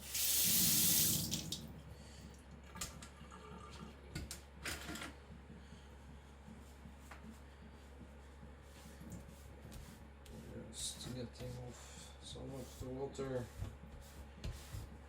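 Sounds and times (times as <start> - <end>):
water splashing from a tap: 0.0 - 1.7.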